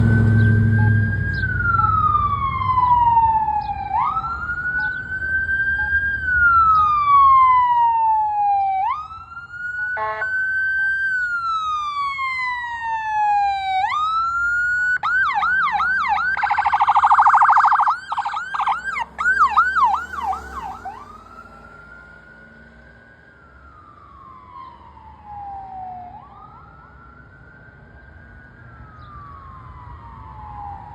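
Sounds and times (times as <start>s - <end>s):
engine rumble: 0.0s - 7.9s, 14.2s - 30.9s
ambulance siren wailing: 0.0s - 30.9s
vehicle horn blast: 10.0s - 10.3s.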